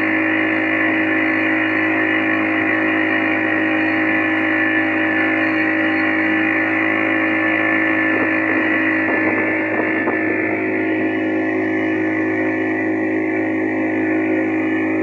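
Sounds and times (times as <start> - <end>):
boat engine droning: 0.0 - 15.0.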